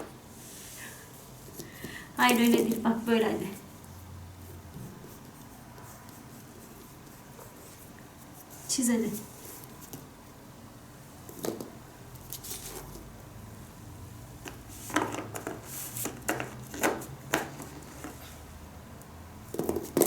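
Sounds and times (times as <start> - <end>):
crayons clicking on a table: 14.5 - 18.2, 19.5 - 20.0.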